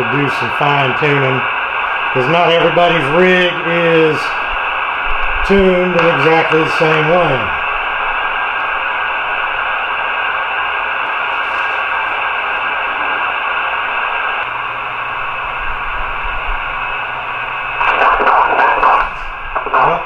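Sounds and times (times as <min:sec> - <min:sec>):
voice over radio: 0:00.0 - 0:04.6, 0:05.2 - 0:07.7, 0:17.8 - 0:20.0
faint low hum: 0:00.0 - 0:20.0
radio receiver hiss: 0:00.0 - 0:20.0.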